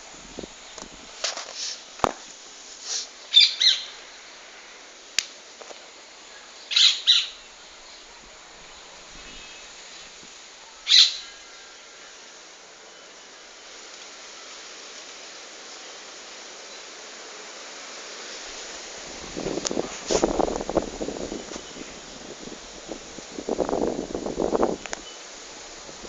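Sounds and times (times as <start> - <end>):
praying mantis hissing: 0.0 - 26.0.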